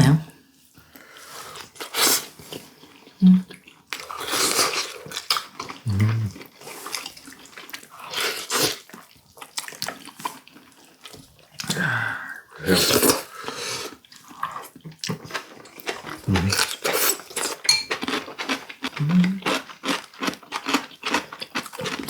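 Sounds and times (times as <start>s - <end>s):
wet slurping and chewing: 1.2s - 22.0s.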